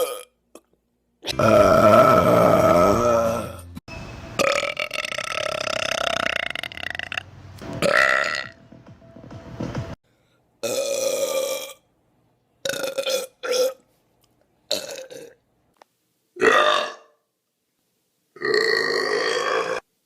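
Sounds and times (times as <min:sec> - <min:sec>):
person belching: 0:00.0 - 0:03.6, 0:04.4 - 0:07.2, 0:07.8 - 0:08.6, 0:10.6 - 0:11.8, 0:14.7 - 0:15.4, 0:16.4 - 0:17.1, 0:18.4 - 0:19.8.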